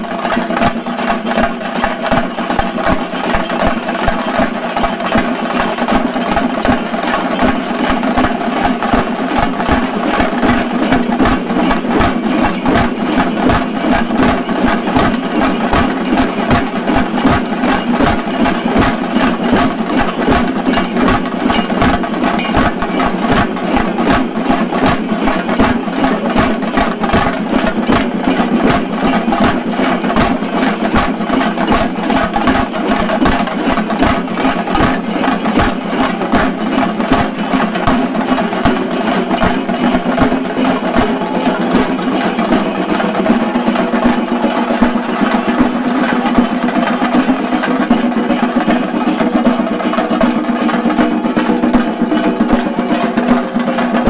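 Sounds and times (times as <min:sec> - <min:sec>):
drums beaten fast with sticks: 0:00.0 - 0:54.0.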